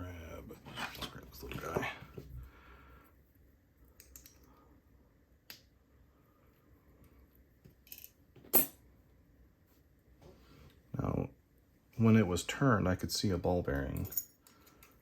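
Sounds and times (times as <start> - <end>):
small metal clicks from padlock parts: 4.0 - 4.5, 13.9 - 15.0.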